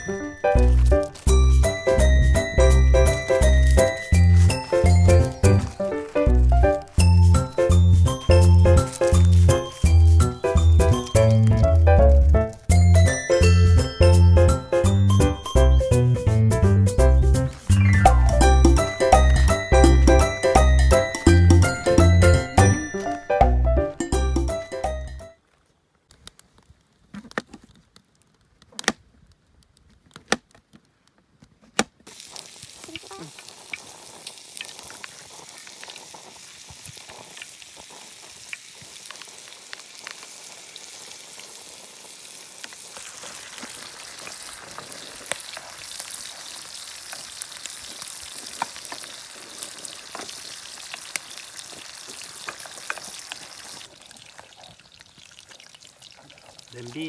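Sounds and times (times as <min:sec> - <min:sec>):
food sizzling in a pan: 0:00.0 - 0:11.7, 0:17.3 - 0:23.2, 0:32.1 - 0:57.0.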